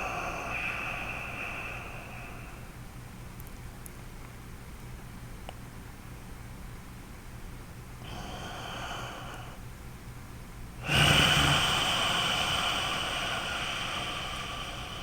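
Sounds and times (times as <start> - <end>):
man breathing through nose: 0.0 - 2.8, 8.1 - 9.6, 10.8 - 15.0.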